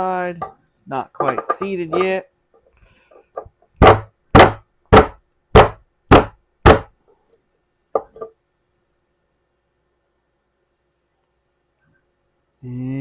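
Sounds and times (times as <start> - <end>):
sharp knocks on bearing: 3.8 - 6.9.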